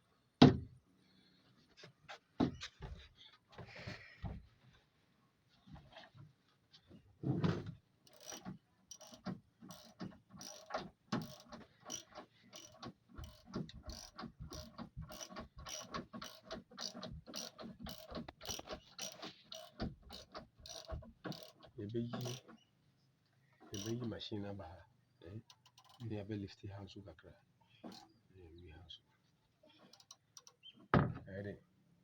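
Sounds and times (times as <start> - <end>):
hand ratchet clicking: 8.1 - 22.5, 23.7 - 24.1, 25.5 - 26.1, 29.8 - 30.6.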